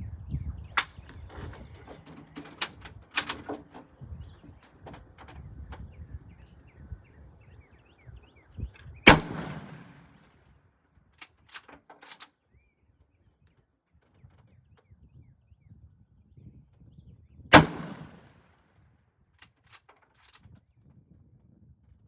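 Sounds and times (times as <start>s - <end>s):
rifle shot: 9.1s - 10.2s, 17.5s - 18.3s.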